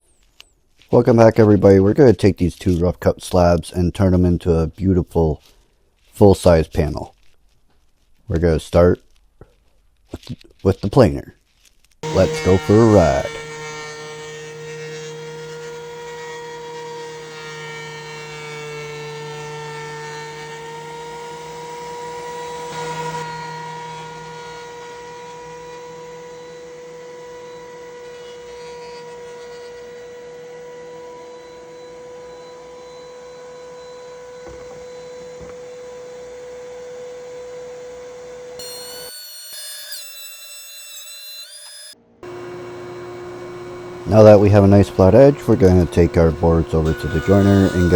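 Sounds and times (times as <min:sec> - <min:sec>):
planer cutterhead cutting wood: 0:12.0 - 0:47.9
wood planer motor whine: 0:12.0 - 0:47.9.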